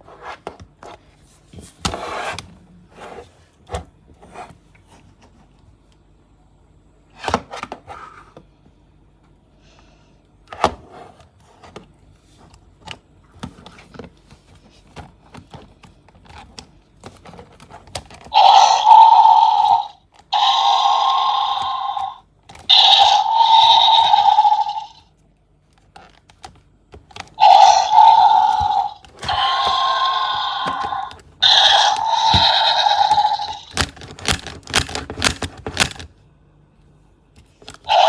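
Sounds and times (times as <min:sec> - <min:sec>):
electronic dinosaur roar: 0:18.3 - 0:25.0, 0:27.4 - 0:33.8
packaging clicks and knocks: 0:33.7 - 0:36.1.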